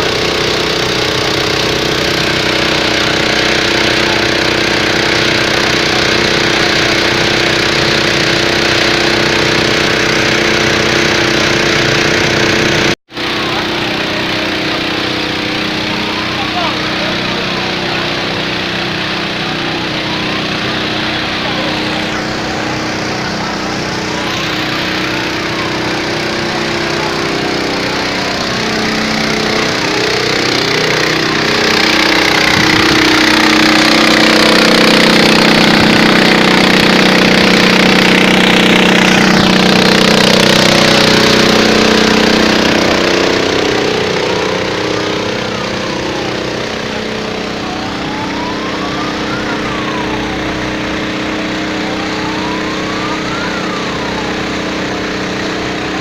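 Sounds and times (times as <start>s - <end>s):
engine running: 0.0s - 56.0s
siren wailing: 13.4s - 56.0s.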